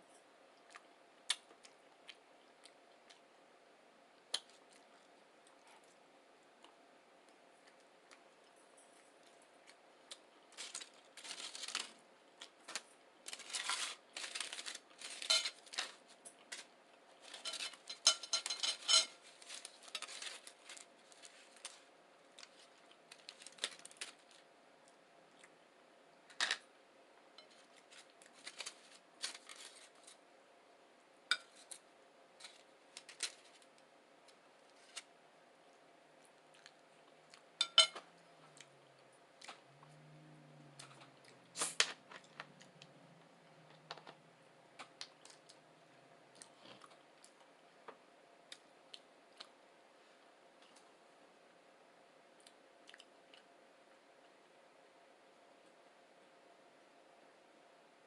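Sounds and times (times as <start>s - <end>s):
person chewing food: 0.6s - 3.3s, 36.2s - 37.6s, 46.3s - 47.6s.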